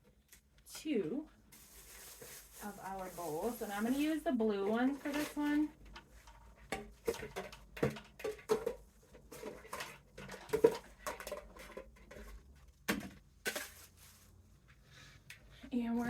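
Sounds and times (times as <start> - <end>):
bowls knocking and clattering: 2.1 - 14.0.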